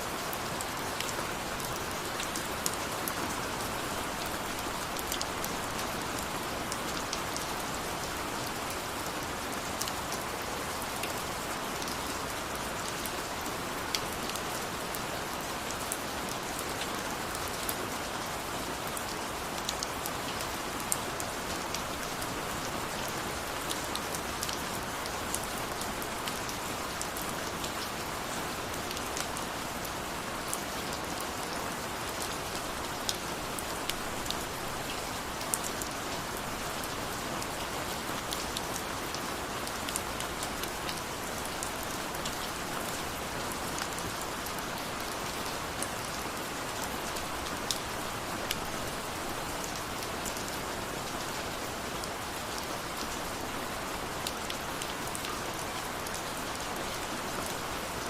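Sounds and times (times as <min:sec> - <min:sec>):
steady rain hiss: 0:00.0 - 0:58.0.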